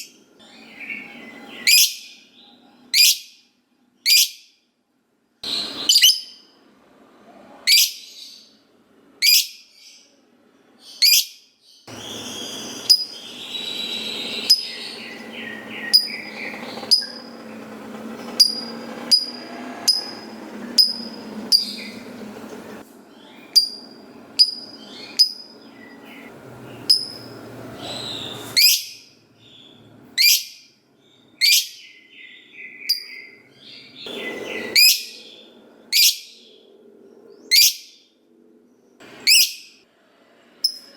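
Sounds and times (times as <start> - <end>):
lovebird high chirps: 0.0 - 2.2, 2.9 - 3.4, 4.0 - 4.5, 5.4 - 6.5, 7.7 - 8.4, 9.2 - 9.8, 10.9 - 17.3, 23.2 - 29.1, 30.2 - 30.6, 31.4 - 33.4, 34.0 - 36.4, 37.5 - 37.9, 39.2 - 39.8.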